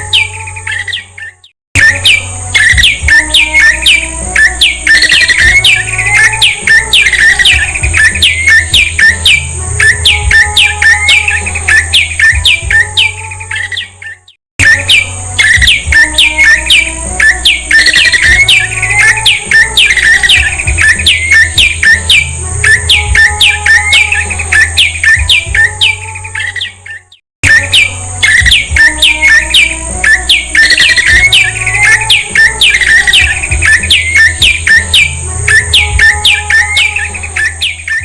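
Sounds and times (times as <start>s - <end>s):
bird chirping song: 0.0s - 38.0s.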